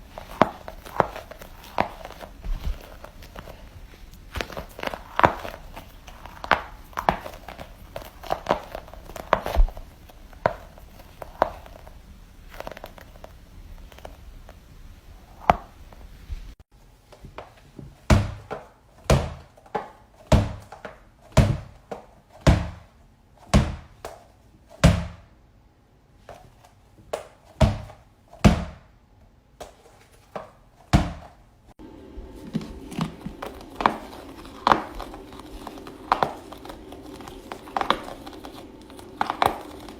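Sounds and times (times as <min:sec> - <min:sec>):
light taps and crinkles: 0:00.0 - 0:16.6, 0:31.8 - 0:39.9.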